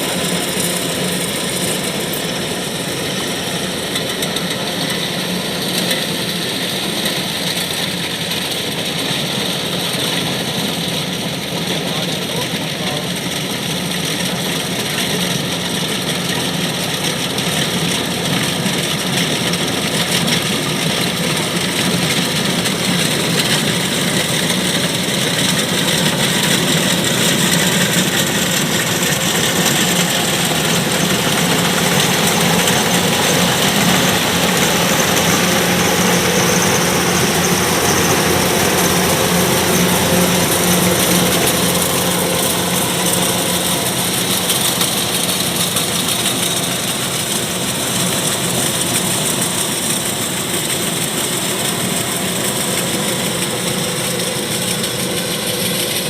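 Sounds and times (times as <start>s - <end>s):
combine harvester engine drone: 0.0s - 56.0s.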